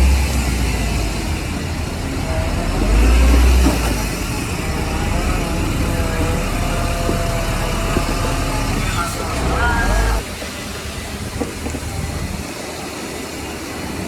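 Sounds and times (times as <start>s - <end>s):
diesel engine of heavy machinery: 0.0s - 14.0s.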